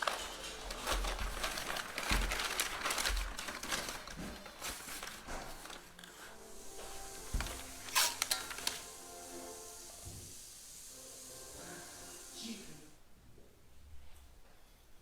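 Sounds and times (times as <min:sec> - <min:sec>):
crinkling and rustling handling: 0:00.0 - 0:09.0.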